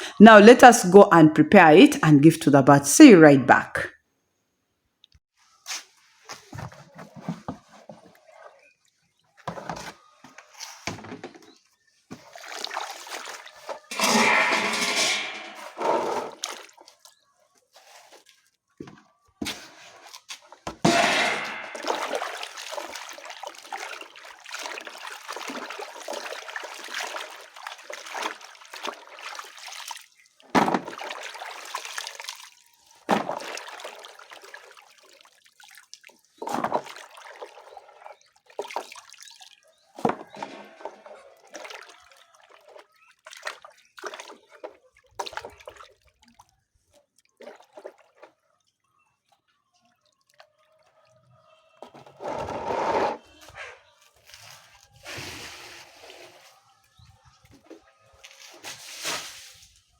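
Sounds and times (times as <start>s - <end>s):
water running and splashing: 12.1s - 17.0s, 20.9s - 48.4s.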